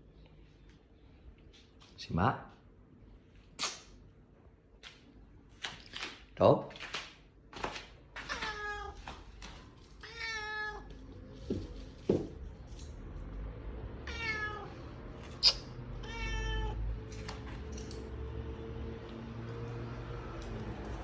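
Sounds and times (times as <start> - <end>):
cat meowing: 8.2 - 9.4, 10.0 - 11.1, 14.0 - 17.2.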